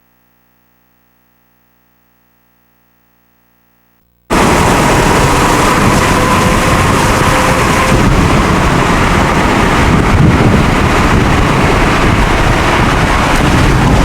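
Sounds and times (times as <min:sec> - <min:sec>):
car road and wind noise: 0:04.3 - 0:14.0.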